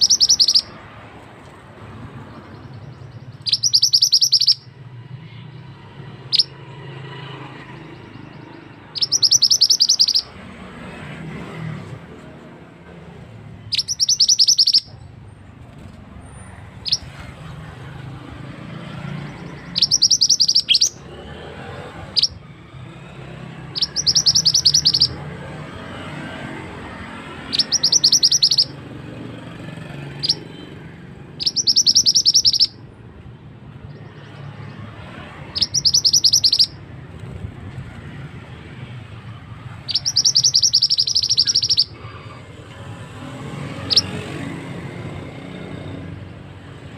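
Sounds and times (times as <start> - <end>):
bird high rapid trills: 0.0 - 0.9, 2.2 - 4.8, 6.2 - 12.0, 13.4 - 15.0, 16.8 - 29.0, 29.7 - 32.8, 33.8 - 37.0, 39.3 - 44.6.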